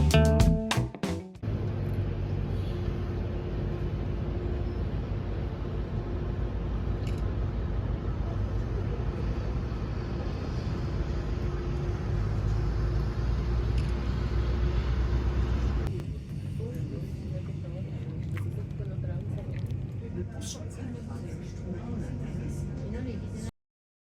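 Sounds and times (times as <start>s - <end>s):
vehicle running noise: 1.3s - 17.4s.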